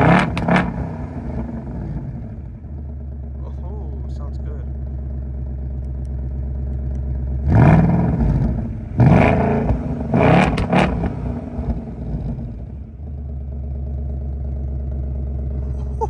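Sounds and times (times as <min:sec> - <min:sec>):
car engine revving from idle: 0:00.0 - 0:02.6, 0:06.8 - 0:15.8.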